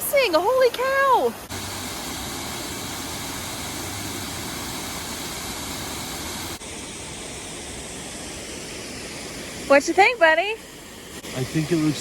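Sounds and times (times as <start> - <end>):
waterfall rushing: 0.4 - 6.6.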